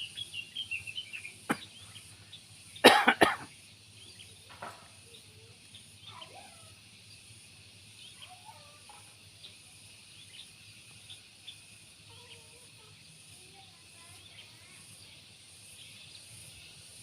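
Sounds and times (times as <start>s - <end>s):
faint bird chirps: 0.0s - 17.0s.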